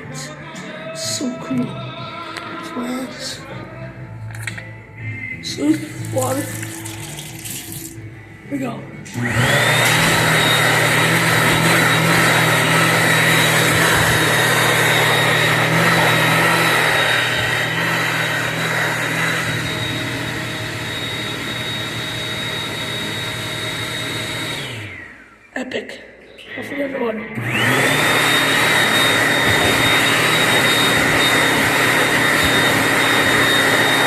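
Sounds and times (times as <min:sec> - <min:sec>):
hand dryer blowing: 0:05.6 - 0:08.0, 0:09.1 - 0:25.4, 0:27.4 - 0:34.0
hand dryer low hum: 0:09.0 - 0:25.5, 0:27.4 - 0:34.0.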